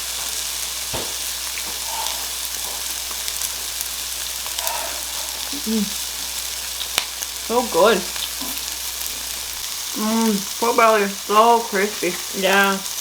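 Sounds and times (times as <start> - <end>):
meat sizzling on a grill: 0.0 - 13.0.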